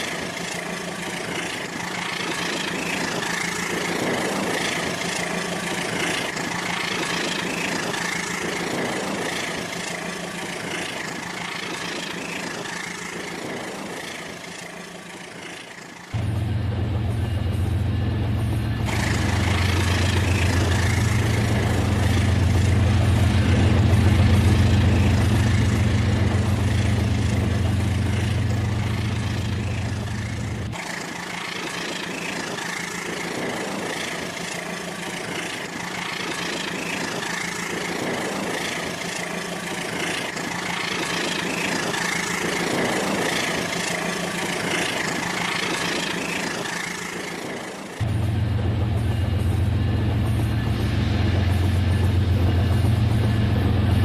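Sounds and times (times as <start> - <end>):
toy train motor whir and rattle: 0.0 - 16.1, 24.0 - 48.0
deep low drone: 0.0 - 54.0.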